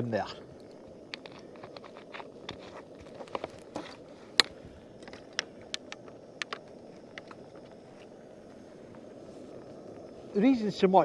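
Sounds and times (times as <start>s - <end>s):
low steady hiss: 0.0s - 11.0s
cooking gear clicking and knocking: 0.6s - 7.9s.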